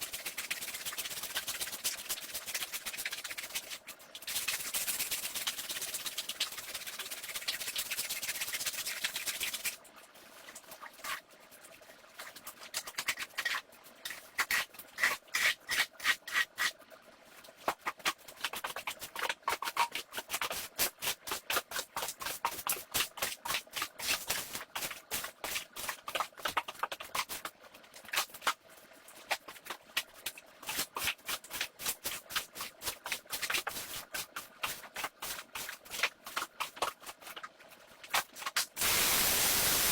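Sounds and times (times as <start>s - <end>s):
steady hiss: 38.8s - 39.9s.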